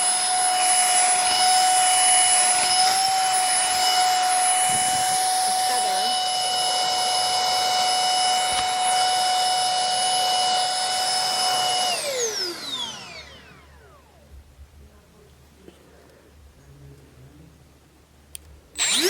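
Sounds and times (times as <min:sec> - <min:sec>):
stick vacuum motor whine: 0:00.0 - 0:14.2, 0:18.8 - 0:19.0.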